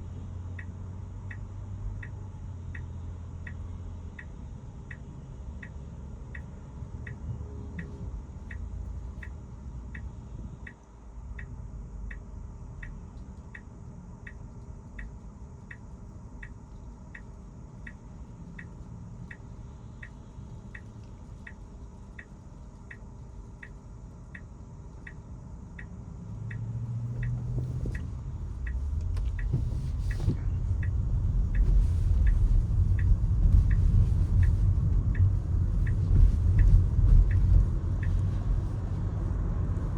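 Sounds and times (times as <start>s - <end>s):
turn signal ticking: 0.0s - 39.9s
tyre and road rumble: 26.2s - 39.9s.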